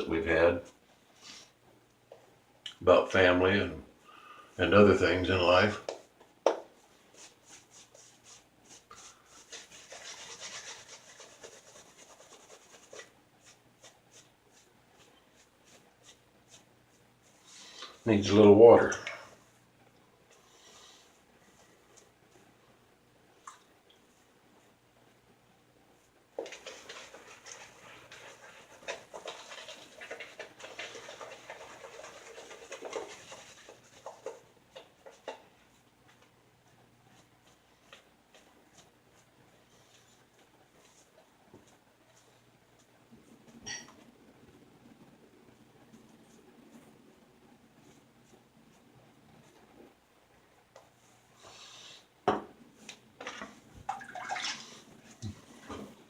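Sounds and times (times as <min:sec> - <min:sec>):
shaving brush squishing lather: 0:07.1 - 0:18.0, 0:26.4 - 0:35.4.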